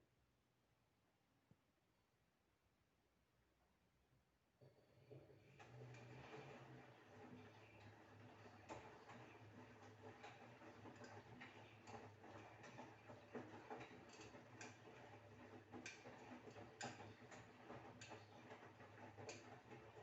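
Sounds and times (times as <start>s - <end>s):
washing machine humming: 4.6s - 20.0s.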